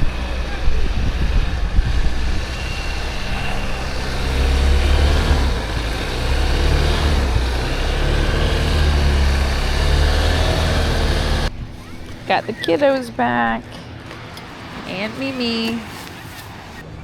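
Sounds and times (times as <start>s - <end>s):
car road and engine rumble: 0.0s - 17.0s.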